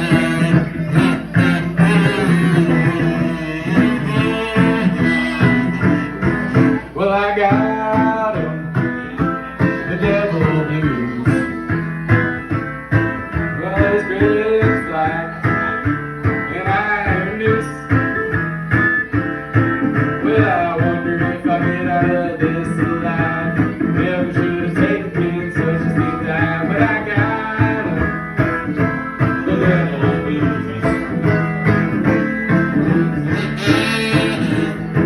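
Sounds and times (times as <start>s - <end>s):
person singing: 0.0s - 12.5s, 20.2s - 31.5s, 32.5s - 35.0s
banjo picking blues: 0.0s - 35.0s.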